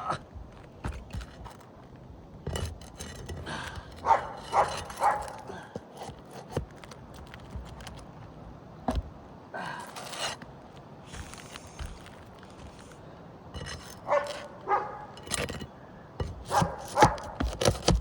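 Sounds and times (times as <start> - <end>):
light knocks and scrapes: 0.0 - 9.2, 9.8 - 18.0
dog barking: 4.0 - 5.4, 14.1 - 15.2, 16.5 - 17.4.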